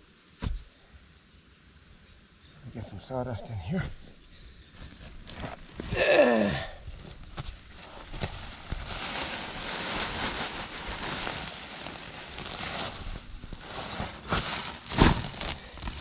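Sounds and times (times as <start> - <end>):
sawdust pouring with dry rustle: 7.4 - 16.0.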